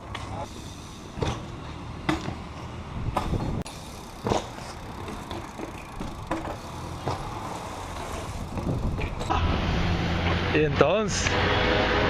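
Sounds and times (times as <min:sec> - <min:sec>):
low traffic rumble: 0:00.0 - 0:12.0
bike sharp knocks on pavement: 0:01.2 - 0:02.4, 0:04.2 - 0:04.6, 0:05.3 - 0:07.3.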